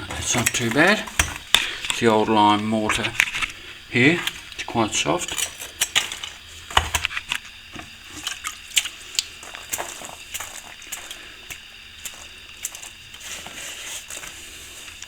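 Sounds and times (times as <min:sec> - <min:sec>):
metal tool scraping mortar: 0:00.0 - 0:07.1.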